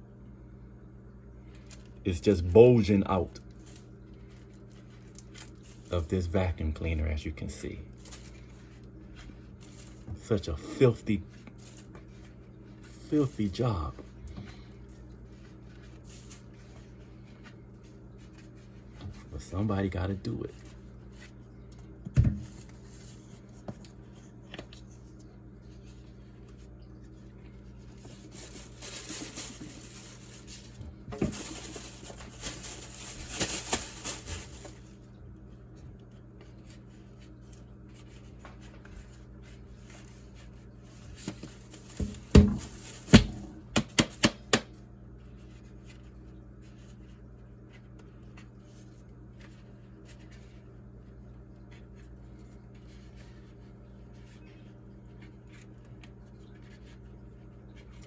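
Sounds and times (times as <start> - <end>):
faint low hum: 0.0 - 58.0
rustling and scraping debris: 24.8 - 35.0.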